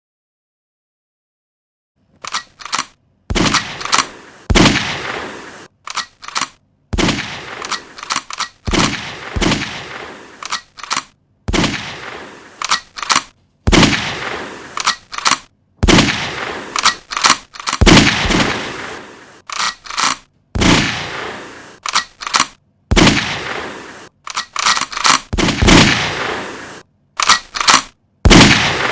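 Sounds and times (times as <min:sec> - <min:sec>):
gunshots with echo: 0:03.3 - 0:05.7, 0:06.9 - 0:08.0, 0:08.6 - 0:10.4, 0:11.5 - 0:19.4, 0:20.6 - 0:21.8, 0:22.9 - 0:24.1, 0:25.2 - 0:26.8, 0:27.8 - 0:28.9.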